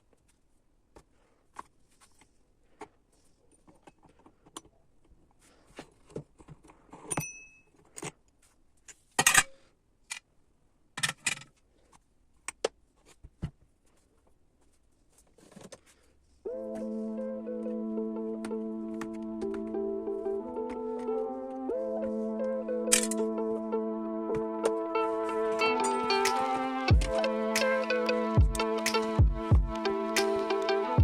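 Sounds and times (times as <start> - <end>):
tools clicking and clinking: 22.9 - 23.3.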